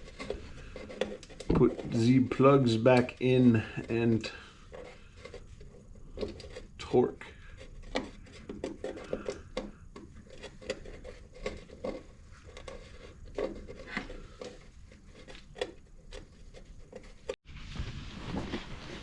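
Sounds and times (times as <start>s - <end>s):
hand tools clicking and knocking: 0.0s - 5.4s, 7.6s - 17.4s.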